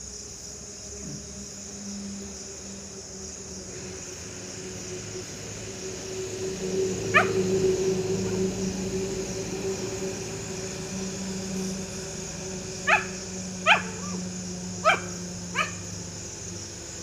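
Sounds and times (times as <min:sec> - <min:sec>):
steady low hum: 0:00.0 - 0:17.0
dog barking: 0:07.1 - 0:07.4, 0:12.8 - 0:14.2, 0:14.8 - 0:15.8.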